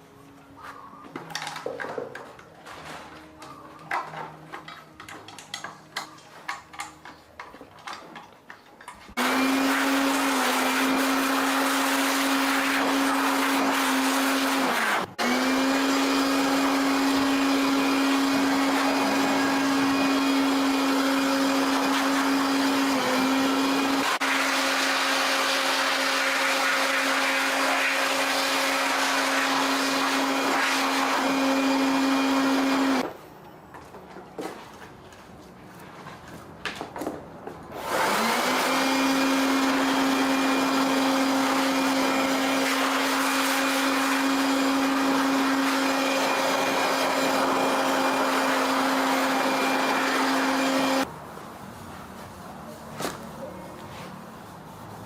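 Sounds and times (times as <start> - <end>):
clicks of parts being handled: 3.4 - 9.1.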